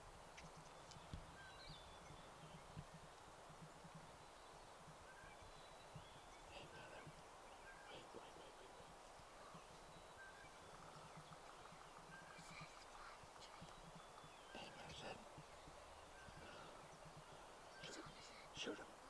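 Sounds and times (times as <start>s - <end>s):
faint songbird chirps: 0.0s - 19.0s.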